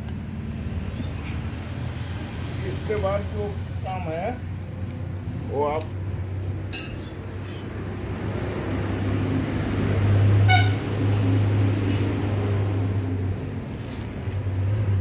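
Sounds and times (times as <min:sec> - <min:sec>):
metal tools clinking: 0:03.8 - 0:04.5, 0:06.7 - 0:07.8, 0:11.1 - 0:12.4.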